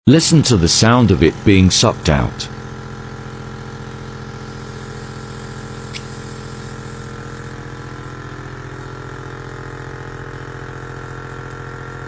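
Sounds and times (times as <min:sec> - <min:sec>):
suction pump humming: 0:00.2 - 0:12.0
sharp click: 0:05.9 - 0:06.2.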